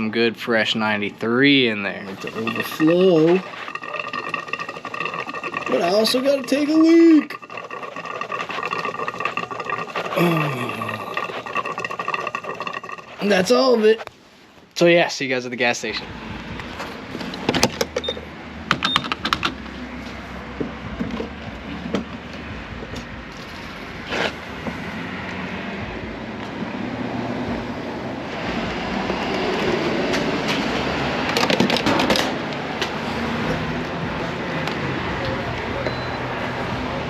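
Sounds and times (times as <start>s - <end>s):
vehicle road noise rumble: 15.8s - 37.0s.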